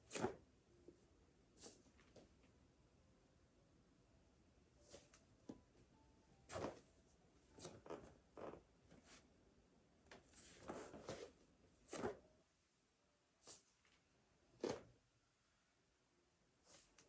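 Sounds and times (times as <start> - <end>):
faint room hiss: 0.0 - 17.0
clothing rustling against a mat: 7.5 - 9.3, 10.2 - 12.2.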